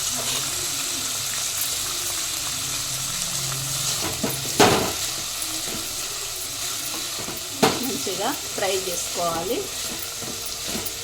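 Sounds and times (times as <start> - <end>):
vegetables sizzling in hot oil: 0.0 - 11.0
spoon knocking against pan: 7.2 - 8.2.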